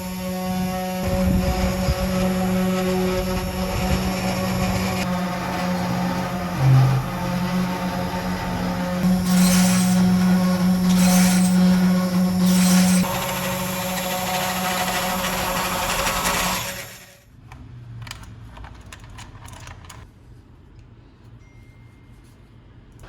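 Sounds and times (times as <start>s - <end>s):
power tool motor cutting wood: 0.0s - 17.2s.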